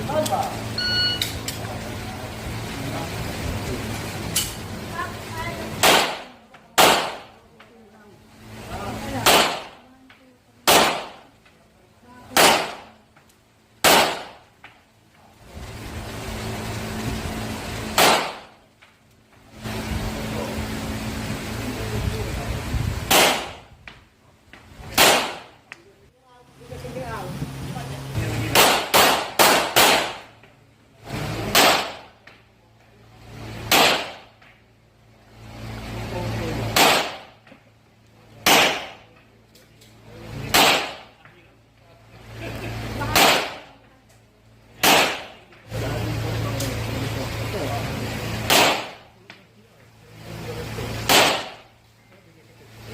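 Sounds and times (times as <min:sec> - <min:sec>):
pistol shots: 0:05.8 - 0:07.4, 0:09.2 - 0:09.8, 0:10.6 - 0:11.3, 0:12.3 - 0:13.0, 0:13.8 - 0:14.4, 0:17.9 - 0:18.6, 0:23.1 - 0:23.7, 0:24.9 - 0:25.6, 0:28.5 - 0:30.4, 0:31.5 - 0:32.2, 0:33.7 - 0:34.3, 0:36.7 - 0:37.4, 0:38.4 - 0:39.1, 0:40.5 - 0:41.2, 0:43.1 - 0:43.8, 0:44.8 - 0:45.4, 0:48.4 - 0:49.1, 0:51.0 - 0:51.7
steady noise: 0:12.0 - 0:32.3.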